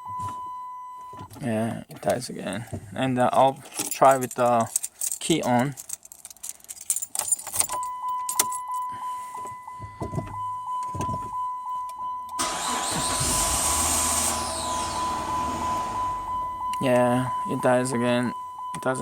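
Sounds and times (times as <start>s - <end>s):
car keys rattling: 3.3s - 8.9s
pulsing warning chime: 7.8s - 19.0s
car engine starting and running: 12.4s - 16.9s.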